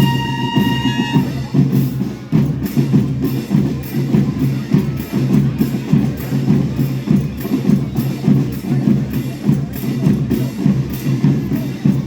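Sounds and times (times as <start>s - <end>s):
held high note: 0.0s - 1.5s
drums playing march beat: 0.0s - 12.0s.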